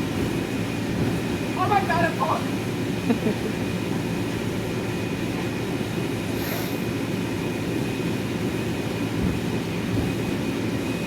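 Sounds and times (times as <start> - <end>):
air blower drone: 6.1 - 7.4.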